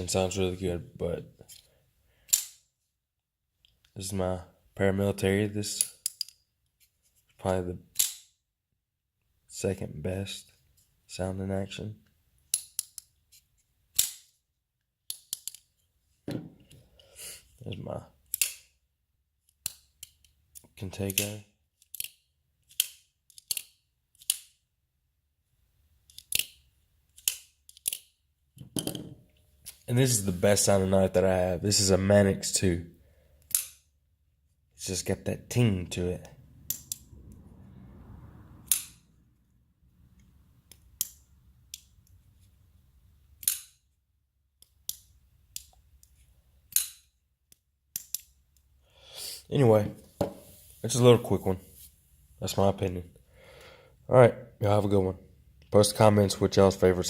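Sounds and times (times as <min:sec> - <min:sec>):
folding knife clicking open and shut: 0:02.3 - 0:02.6, 0:08.0 - 0:08.3, 0:14.0 - 0:14.2, 0:18.3 - 0:18.7, 0:21.8 - 0:24.6, 0:26.1 - 0:28.1, 0:33.5 - 0:33.8, 0:40.7 - 0:41.9, 0:43.4 - 0:43.8, 0:46.7 - 0:47.1, 0:47.9 - 0:48.3.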